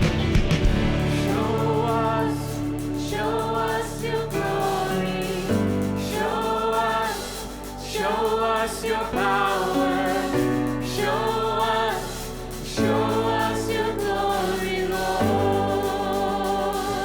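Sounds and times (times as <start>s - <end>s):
band accompaniment: 0.0s - 3.2s
voices singing held notes: 0.0s - 17.0s.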